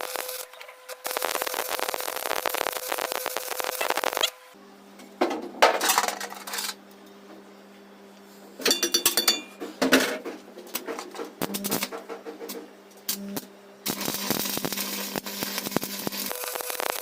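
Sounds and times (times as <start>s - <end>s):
steel tools clanking: 8.6s - 9.6s.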